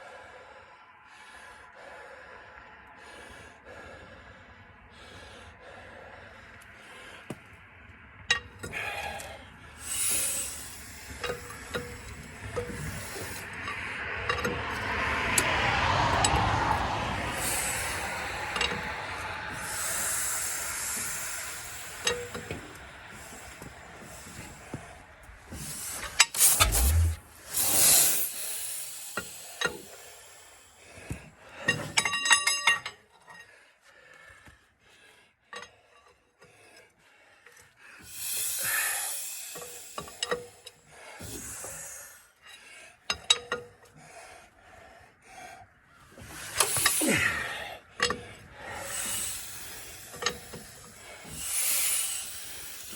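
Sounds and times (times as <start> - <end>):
hissing and rasping: 8.8 - 15.5, 17.2 - 30.9, 38.0 - 42.3, 46.1 - 52.9.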